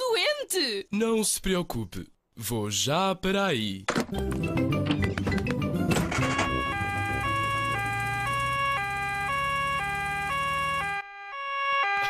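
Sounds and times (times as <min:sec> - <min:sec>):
cartoon two-tone siren: 0:05.9 - 0:12.0.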